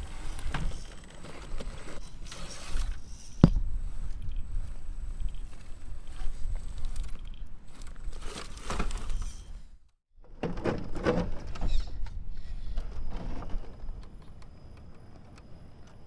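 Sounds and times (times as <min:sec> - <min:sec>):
rc car motor noise: 0:00.0 - 0:09.8.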